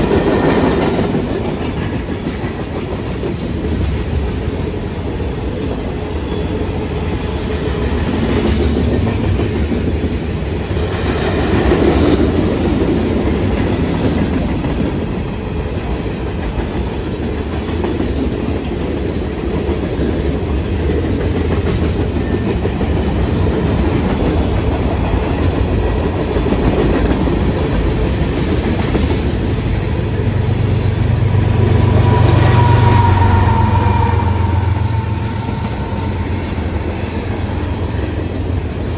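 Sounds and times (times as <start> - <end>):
diesel locomotive engine drone: 0.0 - 38.9
freight cars rumbling past: 27.4 - 38.9.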